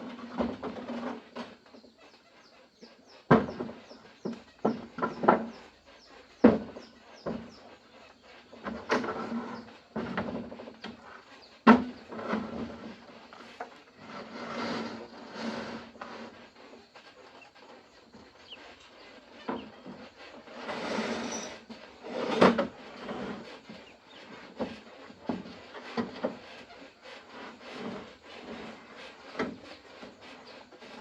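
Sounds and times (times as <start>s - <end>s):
scraping and rustling: 0.0s - 2.0s, 3.4s - 31.0s
wooden knocks and clatters: 3.3s - 5.7s, 6.4s - 7.7s, 8.5s - 13.8s.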